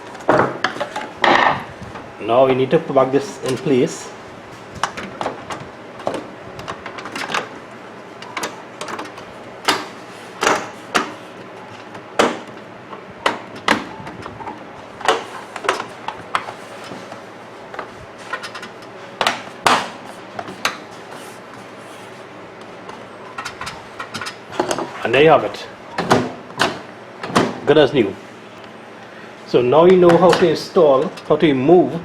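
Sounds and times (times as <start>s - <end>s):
microwave parts clicking and knocking: 0.0s - 1.6s, 4.8s - 17.1s, 17.7s - 20.9s, 22.8s - 24.9s, 25.9s - 27.7s, 29.9s - 31.4s.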